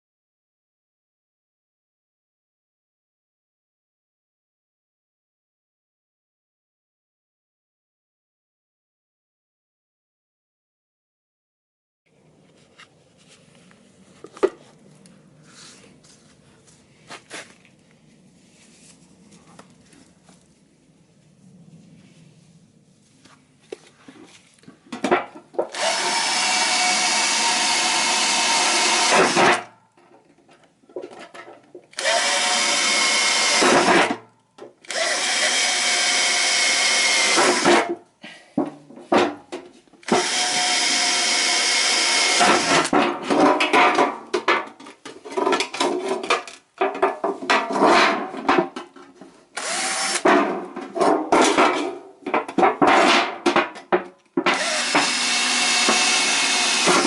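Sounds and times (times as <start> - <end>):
electric drill boring into metal can: 25.7 - 29.7, 31.9 - 34.2, 34.8 - 37.9, 40.0 - 43.0, 49.6 - 50.3, 54.5 - 57.0.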